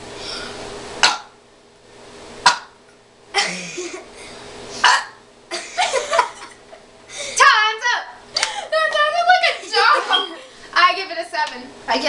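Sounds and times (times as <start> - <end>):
man burping: 3.4 - 4.1.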